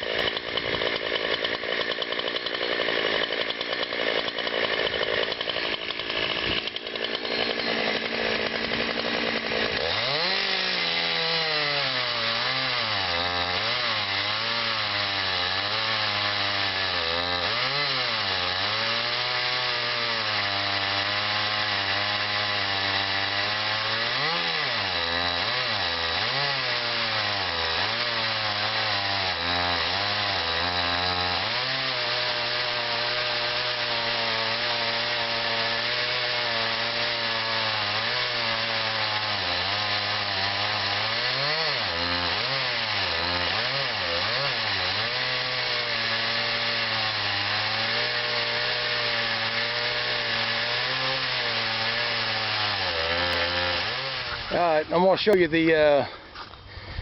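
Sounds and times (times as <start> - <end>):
chainsaw cutting log: 0.0 - 57.0.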